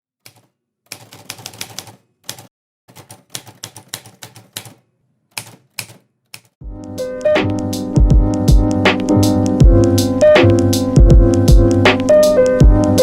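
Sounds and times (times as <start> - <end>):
typewriter keys clacking: 0.2 - 6.6.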